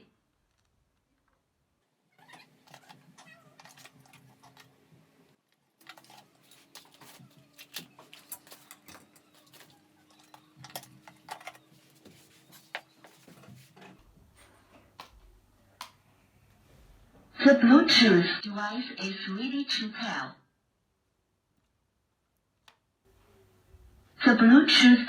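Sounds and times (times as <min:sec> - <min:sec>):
plastic speaker and tools clicking: 0:05.5 - 0:11.8.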